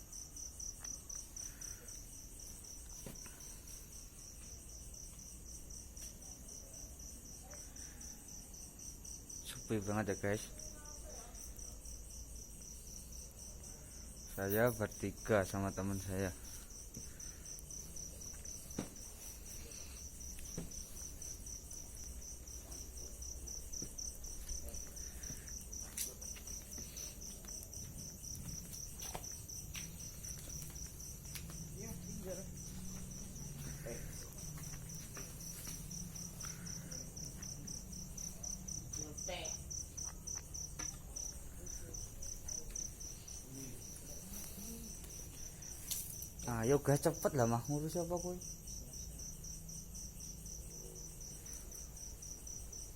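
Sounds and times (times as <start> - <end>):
cricket chirping: 0.0 - 52.9.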